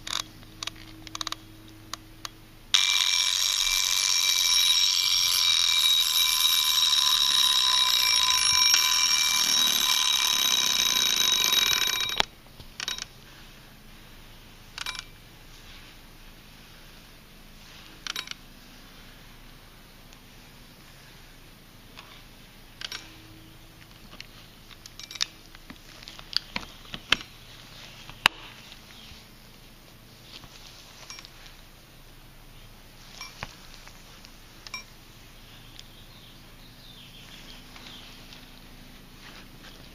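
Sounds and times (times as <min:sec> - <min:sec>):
alarm clock being handled: 0:02.8 - 0:13.1, 0:14.8 - 0:15.1, 0:18.1 - 0:18.4, 0:24.2 - 0:28.3, 0:31.0 - 0:31.5, 0:33.1 - 0:34.0.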